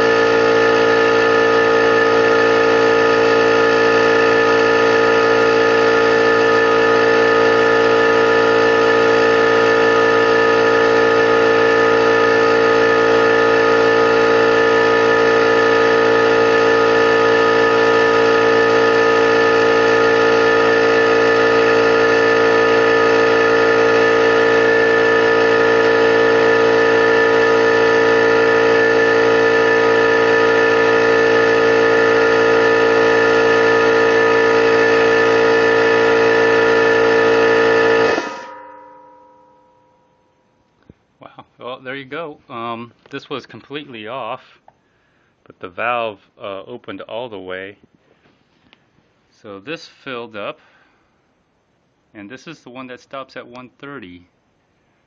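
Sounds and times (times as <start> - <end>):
electric air compressor running: 0.0 - 39.1.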